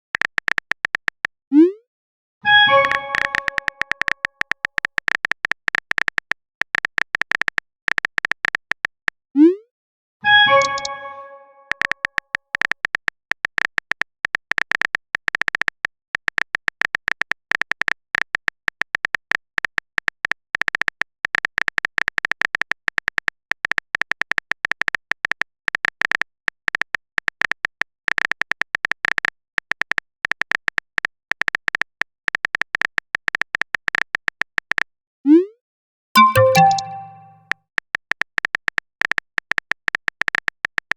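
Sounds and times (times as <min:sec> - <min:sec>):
phone keyboard typing clicks: 0:10.5 - 0:11.0, 0:36.2 - 0:37.4
chiming notification tone: 0:10.5 - 0:11.6, 0:36.2 - 0:37.4.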